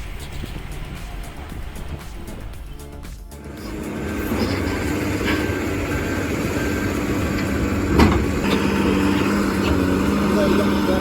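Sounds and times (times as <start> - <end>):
heavy machinery engine running: 0.0 - 11.0.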